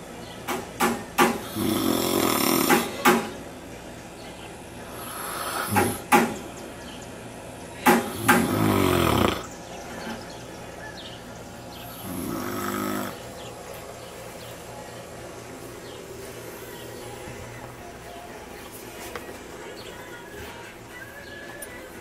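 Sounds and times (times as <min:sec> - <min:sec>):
man snoring: 0:01.4 - 0:03.1, 0:04.9 - 0:06.1, 0:08.0 - 0:09.5, 0:11.9 - 0:13.3.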